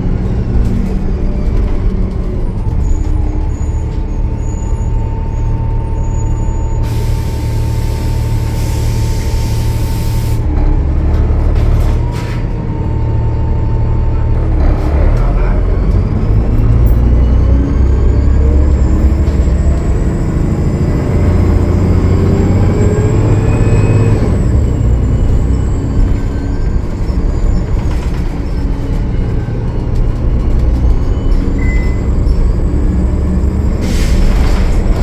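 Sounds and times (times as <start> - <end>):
bus diesel engine under load: 0.0 - 35.0.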